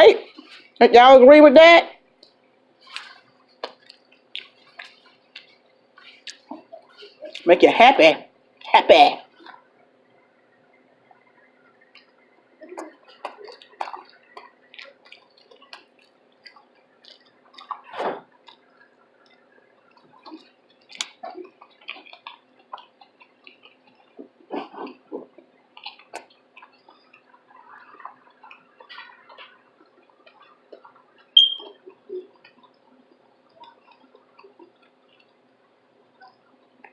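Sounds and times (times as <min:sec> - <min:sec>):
close-miked chewing: 0:02.2 - 0:07.5, 0:09.3 - 0:36.9.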